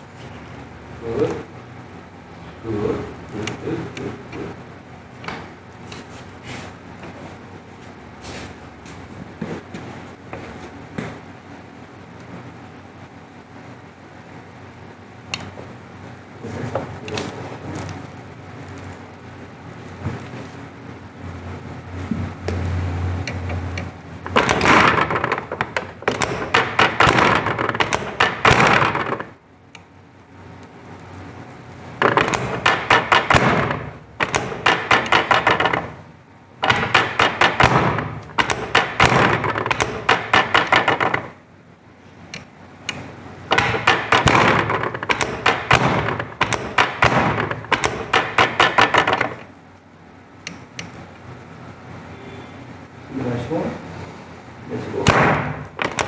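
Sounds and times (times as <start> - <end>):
table sections clacking: 23.3 - 29.4, 32.0 - 41.4, 42.4 - 49.6, 55.0 - 56.0.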